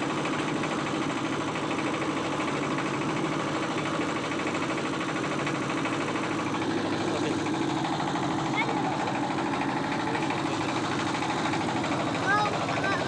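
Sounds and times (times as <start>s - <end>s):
boat engine chugging: 0.0s - 13.0s.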